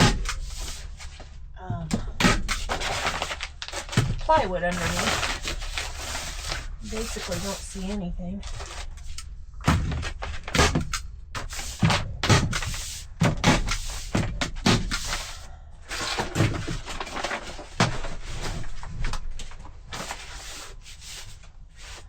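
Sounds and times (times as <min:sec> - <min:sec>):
paper rustling: 0:00.0 - 0:22.0
knocks and thumps on wood: 0:09.6 - 0:15.2.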